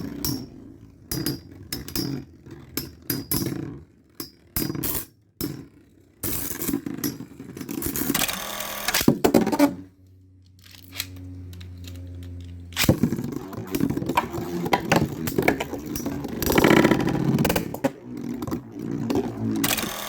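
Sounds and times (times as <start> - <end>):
spinning tops humming: 10.8 - 20.0.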